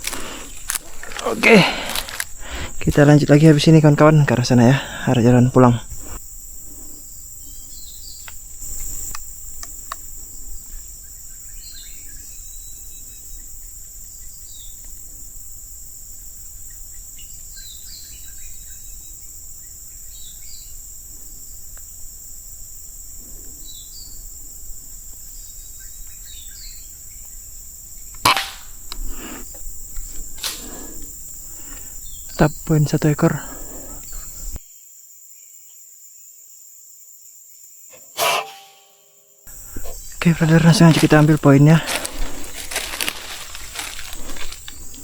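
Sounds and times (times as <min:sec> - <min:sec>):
high insect drone: 0:00.0 - 0:45.0
faint chirps: 0:04.6 - 0:15.5, 0:23.0 - 0:34.6
air rifle shot: 0:28.2 - 0:28.8, 0:38.2 - 0:39.0.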